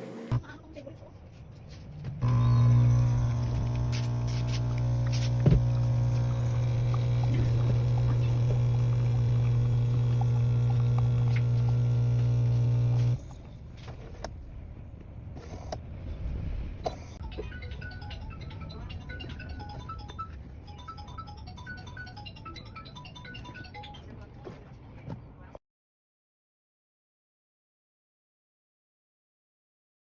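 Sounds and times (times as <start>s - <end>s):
coffee machine humming: 2.2s - 13.5s.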